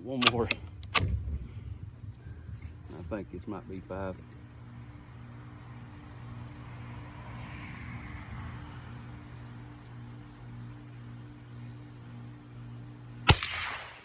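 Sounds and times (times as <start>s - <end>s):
low background hum: 0.0s - 14.0s
rifle shot: 0.1s - 3.1s, 13.3s - 14.0s.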